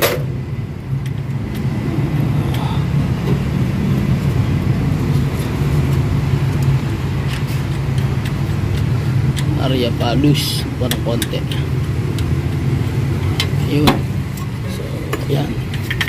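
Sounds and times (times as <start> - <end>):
car engine idling: 0.0 - 16.0
tools clicking on engine: 5.4 - 16.0.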